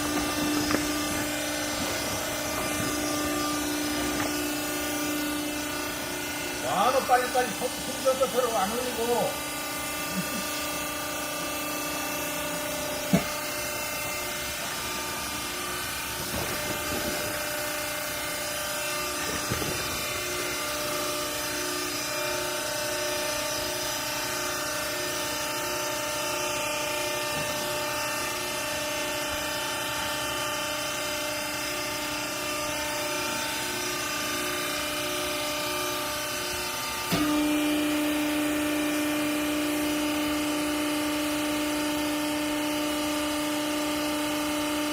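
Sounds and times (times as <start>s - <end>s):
baler motor and pump humming: 0.0s - 44.9s.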